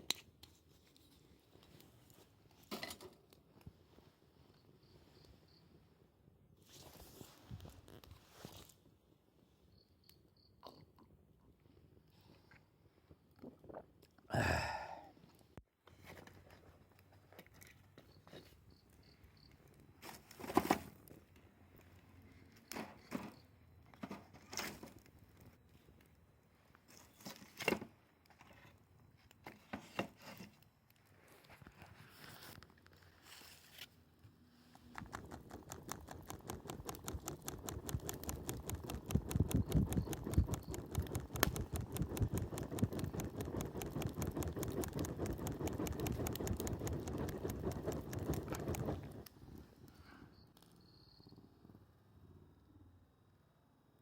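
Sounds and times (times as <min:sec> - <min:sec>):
campfire crackling and popping: 0:34.7 - 0:49.7.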